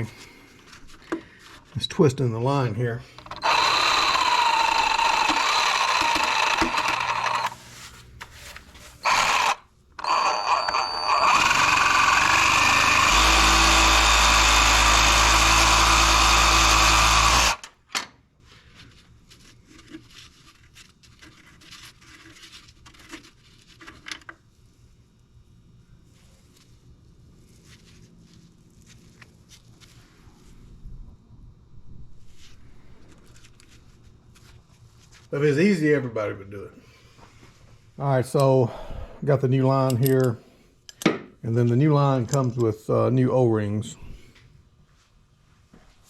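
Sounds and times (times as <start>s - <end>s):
power tool whining: 3.2s - 7.6s, 9.0s - 17.7s.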